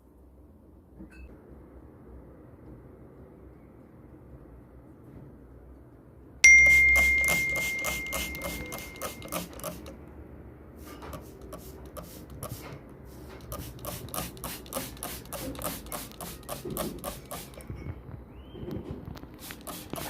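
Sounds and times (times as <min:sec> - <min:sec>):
bell-like ding: 0:06.4 - 0:09.6.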